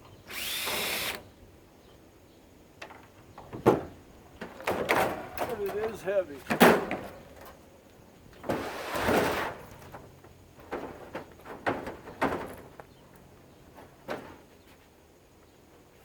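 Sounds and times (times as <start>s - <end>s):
housing scraping slide: 8.4s - 9.7s
knocks and clunks: 10.6s - 12.8s.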